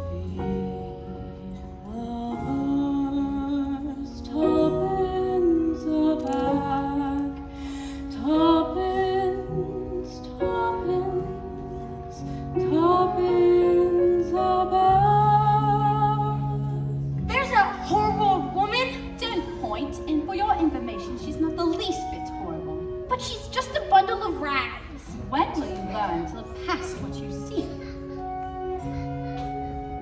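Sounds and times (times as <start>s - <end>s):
soft instrumental accompaniment: 0.0s - 30.0s.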